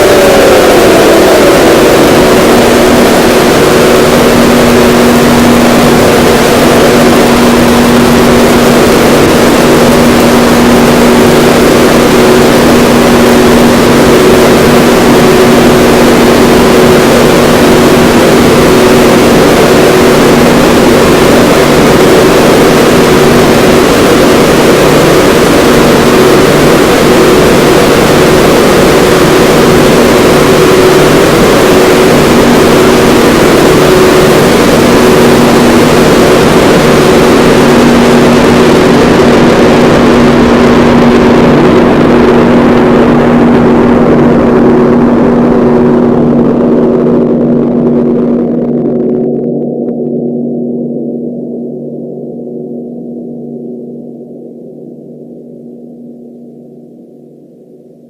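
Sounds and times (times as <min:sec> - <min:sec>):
distorted train horn: 0:00.0 - 0:49.0.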